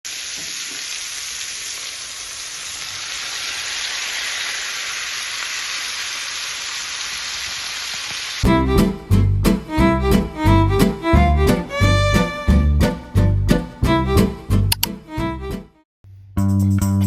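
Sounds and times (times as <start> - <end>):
food sizzling in frying pan: 0.1 - 8.4
music with strings: 8.4 - 15.8.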